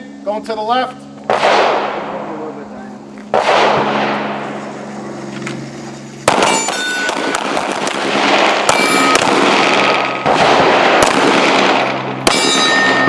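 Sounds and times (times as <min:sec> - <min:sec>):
metallic ringing of steel plate: 0:06.0 - 0:07.5, 0:08.6 - 0:10.2, 0:12.2 - 0:13.0.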